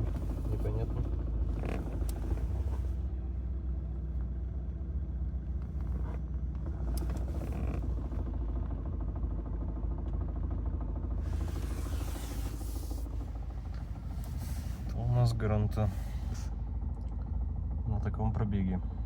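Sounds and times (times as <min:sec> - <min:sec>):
gearbox rattling: 0:00.0 - 0:03.0, 0:05.6 - 0:08.2
car engine idling: 0:00.0 - 0:08.6, 0:11.0 - 0:17.7.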